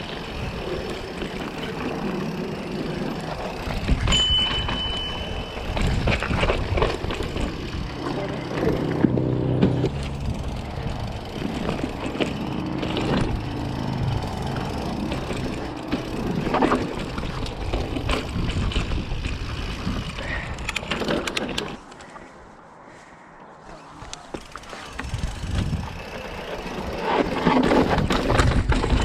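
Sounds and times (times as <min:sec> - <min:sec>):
bike rattling and knocking: 0:00.0 - 0:22.2, 0:24.0 - 0:29.0
wind and tyre noise: 0:00.0 - 0:29.0.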